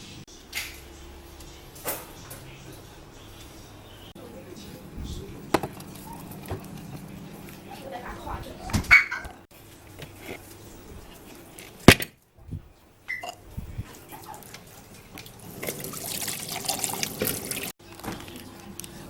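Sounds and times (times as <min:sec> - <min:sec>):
liquid running: 0:13.9 - 0:17.7.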